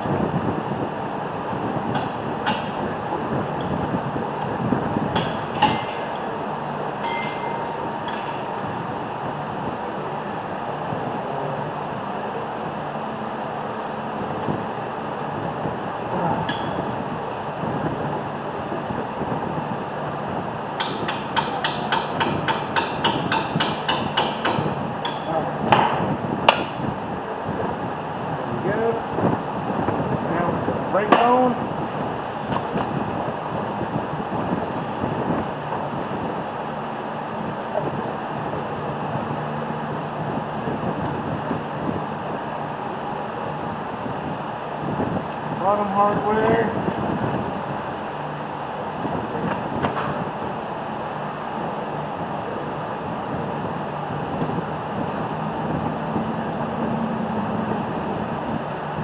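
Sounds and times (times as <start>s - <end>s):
metal tools clinking: 7.0s - 7.6s
short metallic ring: 7.0s - 7.7s.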